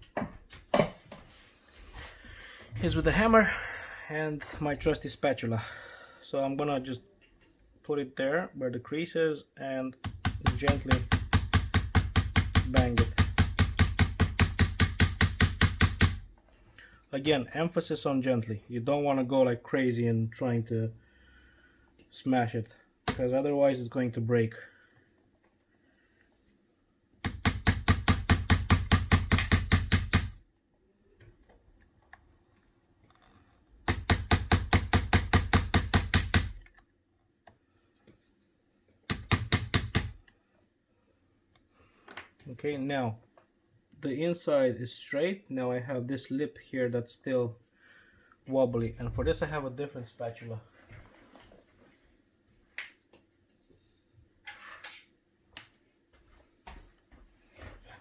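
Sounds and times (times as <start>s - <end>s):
hammer tapping a spatula: 10.0s - 16.2s, 27.3s - 30.4s, 33.9s - 36.6s, 39.1s - 40.2s.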